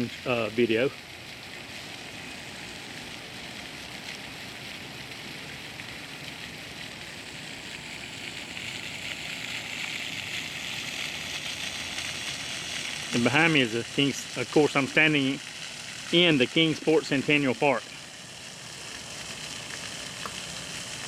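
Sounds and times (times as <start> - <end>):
fountain water splashing: 0.0 - 21.0.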